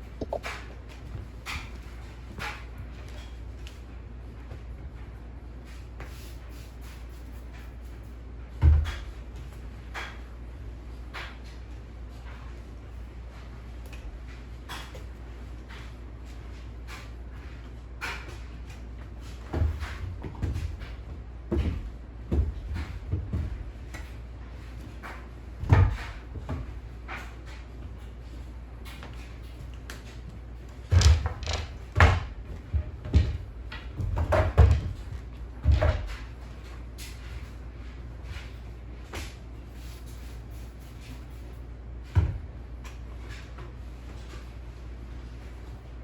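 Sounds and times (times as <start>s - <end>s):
steady low hum: 0.0s - 46.0s
knocks of household objects: 30.9s - 36.3s.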